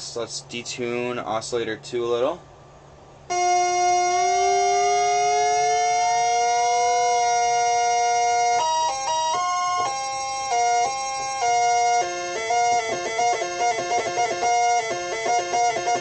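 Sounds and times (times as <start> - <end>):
analog synthesizer two-oscillator tone: 3.3 - 16.0
pitch sliding upward: 3.3 - 16.0
quick synthesizer notes: 3.3 - 16.0.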